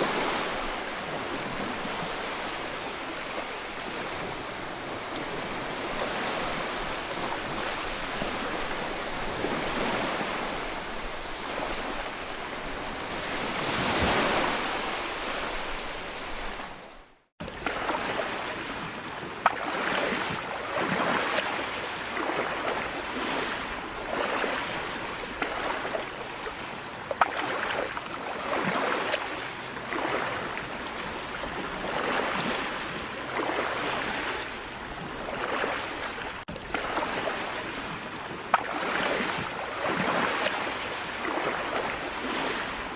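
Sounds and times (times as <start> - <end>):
floodwater rushing: 0.0 - 16.8.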